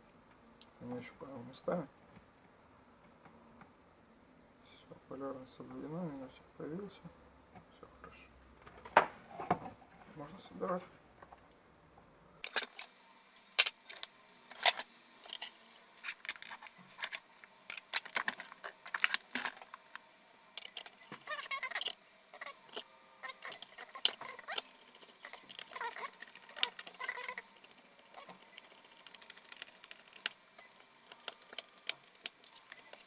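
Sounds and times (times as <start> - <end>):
plastic battery case clicks and rattles: 13.6 - 20.0.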